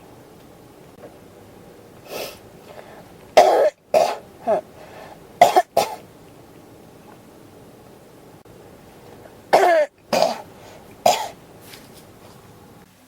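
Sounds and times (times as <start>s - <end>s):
person coughing: 3.4s - 4.7s, 9.6s - 10.5s, 11.1s - 11.4s
rush of breath: 4.7s - 5.3s, 10.5s - 10.9s.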